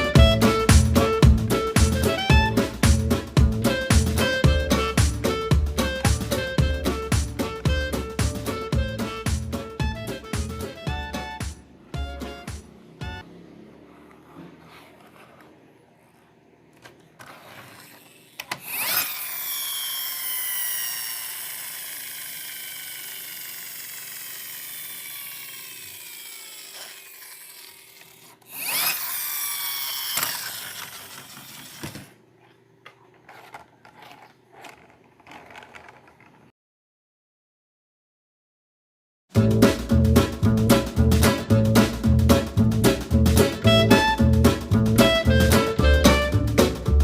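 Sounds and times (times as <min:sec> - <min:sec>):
small motor whirring: 0:17.1 - 0:32.2, 0:33.1 - 0:36.4.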